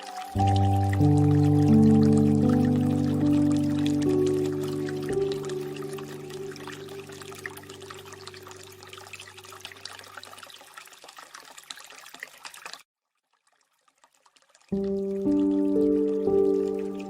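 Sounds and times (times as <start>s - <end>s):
low sustained music notes: 0.0s - 9.4s, 14.8s - 17.0s
water trickling and dripping: 0.0s - 17.0s.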